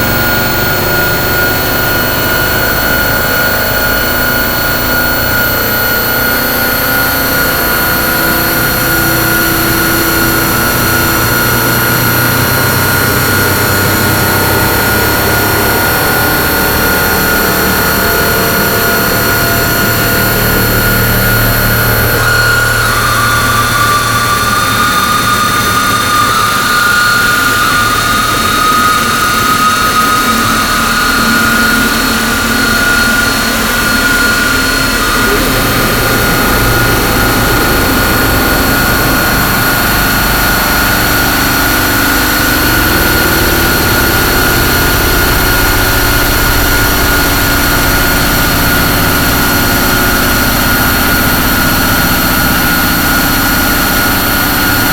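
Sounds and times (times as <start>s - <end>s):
harsh noise drone: 0.0s - 54.9s
whistling tones: 0.0s - 54.9s
low rumble: 32.1s - 54.9s.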